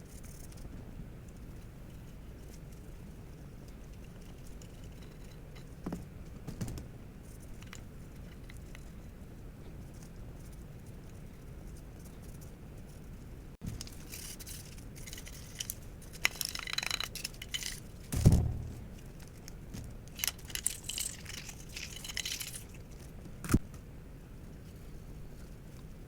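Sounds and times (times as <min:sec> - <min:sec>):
dull knock: 0:18.2 - 0:19.0.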